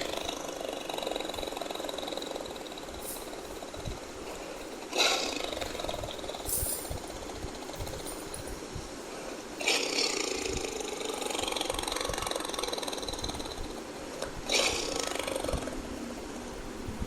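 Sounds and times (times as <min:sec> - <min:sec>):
tiger roaring: 0:14.4 - 0:15.8.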